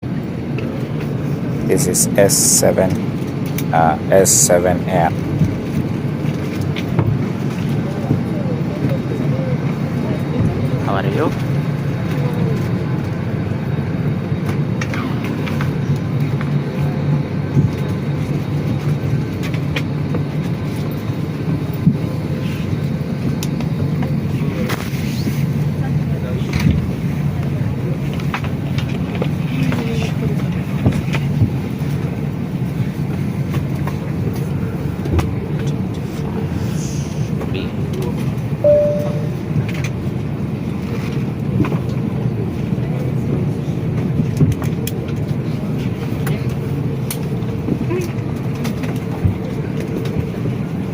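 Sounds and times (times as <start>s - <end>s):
airliner cabin hum: 0.0s - 50.9s
short chime tone: 38.6s - 39.4s.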